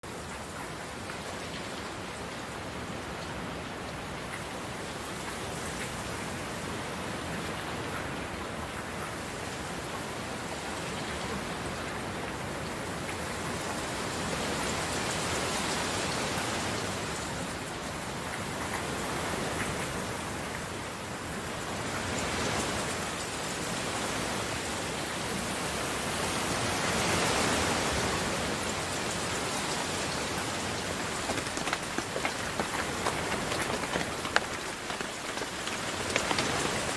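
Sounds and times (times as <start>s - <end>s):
rain pattering: 28.4s - 36.9s.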